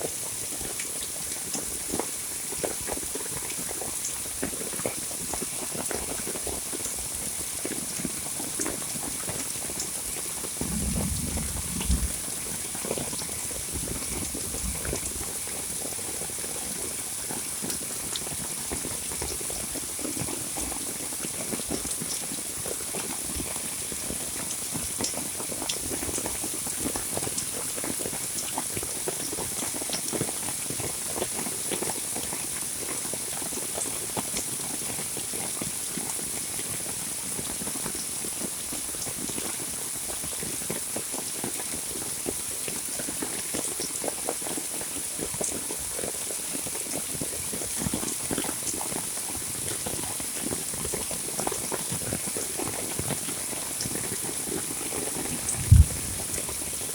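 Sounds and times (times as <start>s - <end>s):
heavy rain falling: 10.2s - 16.5s, 54.1s - 56.9s
low rumble: 10.6s - 12.3s, 55.4s - 56.6s.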